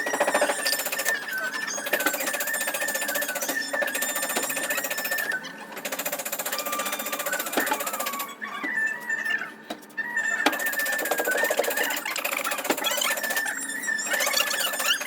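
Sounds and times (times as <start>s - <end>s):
wavering high tone: 0.0s - 5.6s.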